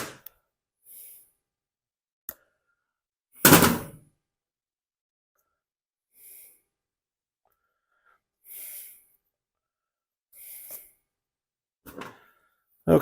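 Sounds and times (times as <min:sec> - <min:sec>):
person breathing close to microphone: 0:00.8 - 0:01.4, 0:06.1 - 0:06.8, 0:07.5 - 0:11.1.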